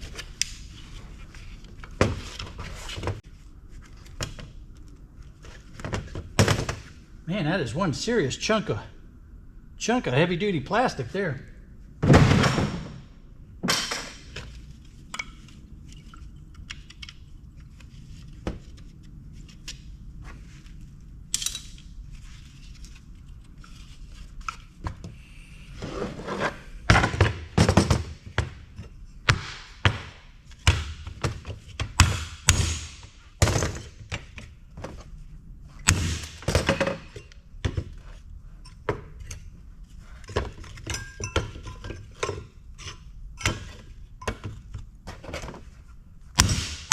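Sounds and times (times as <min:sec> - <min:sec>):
knocks and clatter of dismantling: 0:36.2 - 0:37.8.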